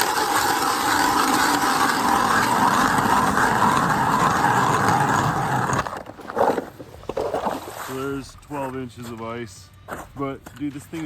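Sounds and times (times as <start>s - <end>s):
ice auger scraping through ice: 0.0s - 9.1s.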